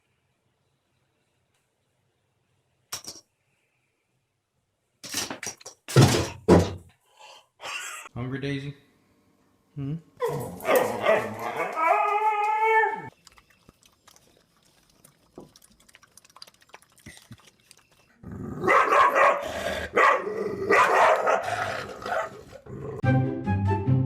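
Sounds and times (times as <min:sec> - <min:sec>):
dog barking and growling: 0:10.2 - 0:13.1, 0:18.3 - 0:23.0.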